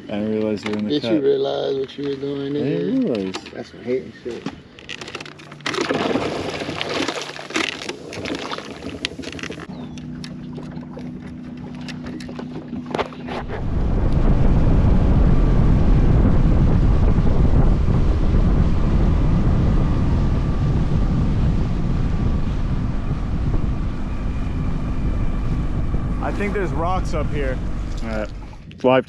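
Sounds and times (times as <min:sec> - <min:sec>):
boat motor humming: 0:04.5 - 0:28.8
wind buffeting microphone: 0:09.0 - 0:29.0.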